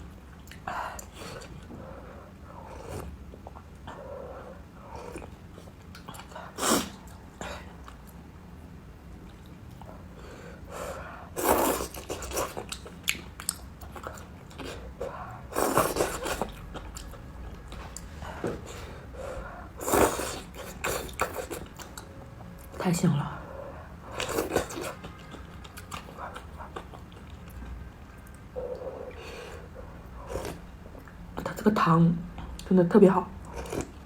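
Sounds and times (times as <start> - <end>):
person chewing: 0.4 - 1.7, 11.4 - 18.8, 19.8 - 22.8, 24.0 - 29.2, 33.4 - 34.0.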